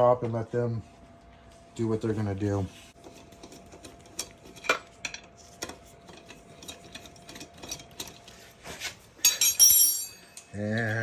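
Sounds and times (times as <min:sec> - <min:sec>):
metal tools clicking and tapping: 0:03.4 - 0:08.3, 0:09.2 - 0:11.0
metallic clink: 0:09.2 - 0:10.5.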